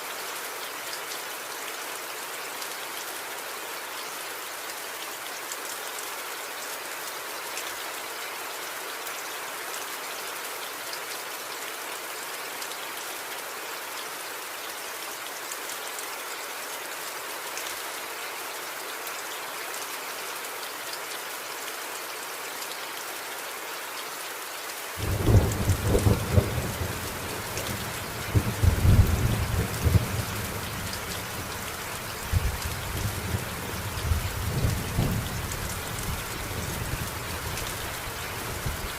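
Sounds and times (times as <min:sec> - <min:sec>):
rain hissing and pattering: 0:24.2 - 0:38.9
thunder rumbling: 0:25.0 - 0:30.5.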